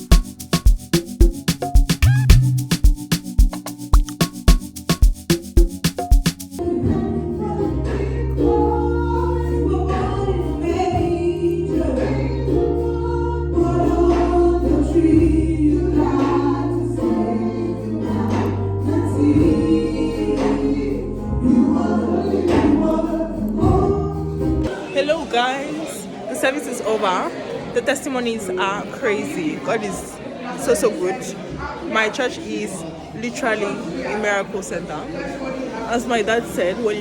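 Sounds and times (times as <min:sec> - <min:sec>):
held bass notes: 0:00.0 - 0:07.8
choir singing gospel: 0:06.6 - 0:27.2.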